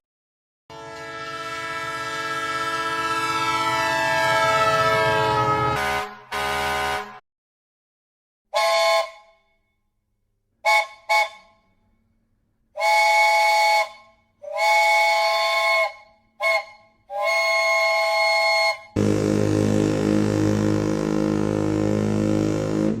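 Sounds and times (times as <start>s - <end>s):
steam locomotive chime whistle: 0.7s - 7.2s, 12.8s - 19.0s.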